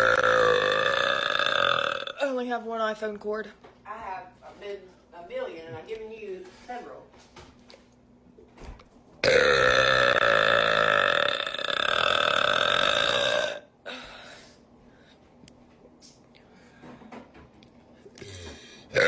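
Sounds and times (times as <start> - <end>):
woman burping: 0.0 - 2.2, 9.2 - 14.0.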